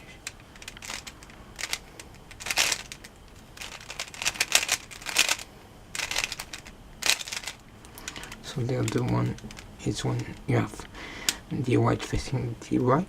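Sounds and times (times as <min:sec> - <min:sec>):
plastic puzzle cube clicking: 0:00.2 - 0:05.4, 0:06.0 - 0:09.7.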